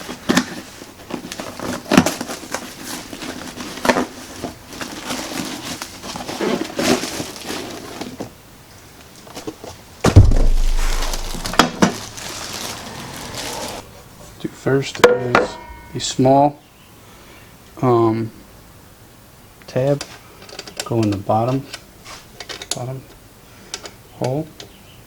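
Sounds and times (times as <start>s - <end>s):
heavy thump with low rumble: 10.1s - 12.5s.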